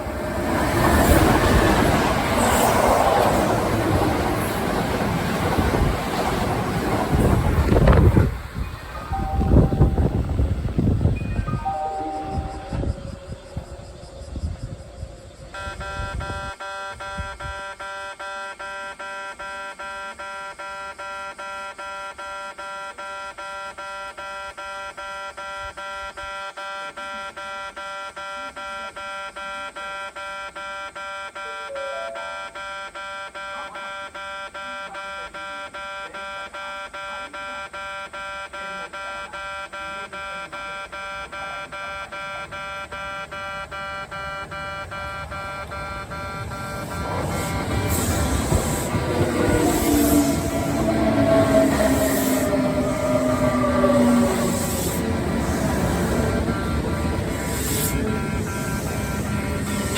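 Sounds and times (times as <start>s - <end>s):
level-crossing alarm ringing: 0.0s - 59.9s.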